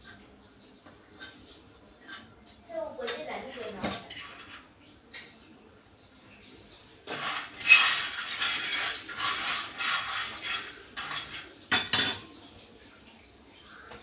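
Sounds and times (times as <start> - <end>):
nuts rattling in a stirred pan: 3.1 - 4.8, 7.0 - 12.2.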